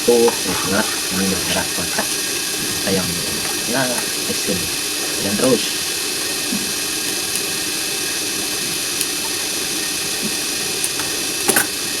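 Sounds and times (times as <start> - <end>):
steady hissing noise: 0.0 - 12.0.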